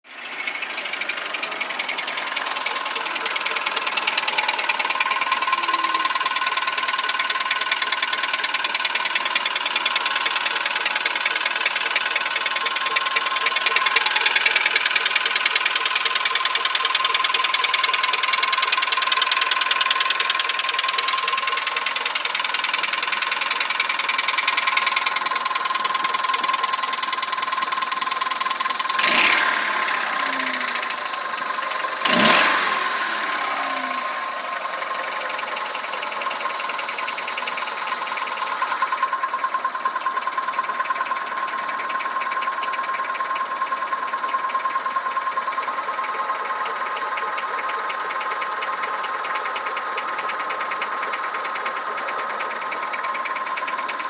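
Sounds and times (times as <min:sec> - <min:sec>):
engine knocking: 0:00.0 - 0:54.0
steady whine: 0:29.6 - 0:39.5.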